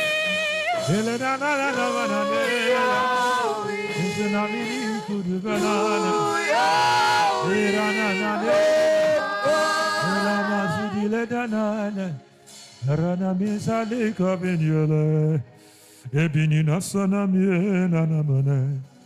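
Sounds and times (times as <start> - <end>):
man singing long sliding notes: 0.0 - 12.2
voices singing along: 0.0 - 12.3.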